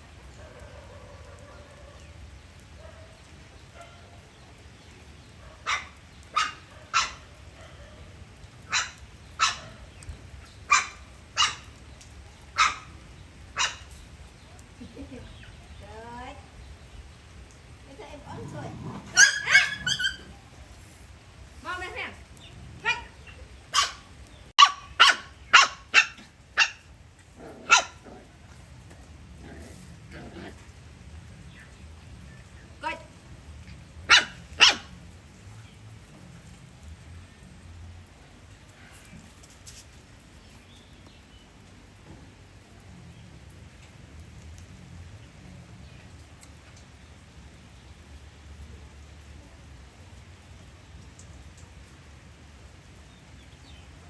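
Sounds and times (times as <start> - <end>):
dog barking: 0.3 - 2.1, 2.8 - 3.2, 3.8 - 4.2, 5.4 - 9.9, 10.7 - 11.7, 12.6 - 12.9, 13.6 - 13.9, 19.0 - 20.2, 23.7 - 26.9, 27.5 - 28.0, 34.1 - 34.9.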